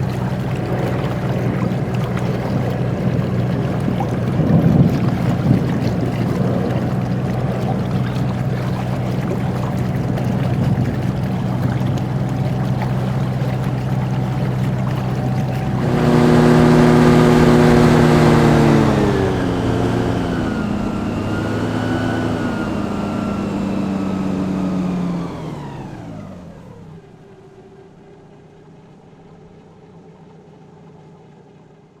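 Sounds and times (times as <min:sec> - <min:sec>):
hovercraft engine and fan: 0:00.0 - 0:32.0.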